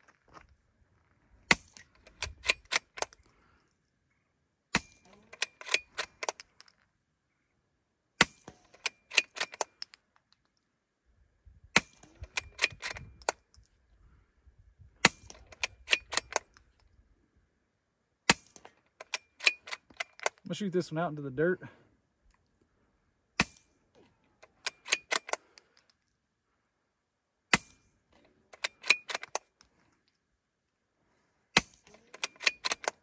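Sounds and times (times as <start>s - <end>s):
rifle action clicks: 1.5s - 3.3s, 4.8s - 6.7s, 8.4s - 10.4s, 11.8s - 13.6s, 15.1s - 16.9s, 18.3s - 20.5s, 24.4s - 26.0s, 28.5s - 29.7s, 31.6s - 33.0s.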